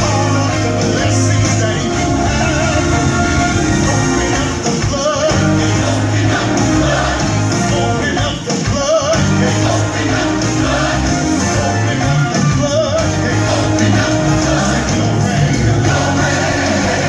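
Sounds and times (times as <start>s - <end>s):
person singing: 0.0s - 10.8s
band with bass and beat: 0.0s - 17.0s.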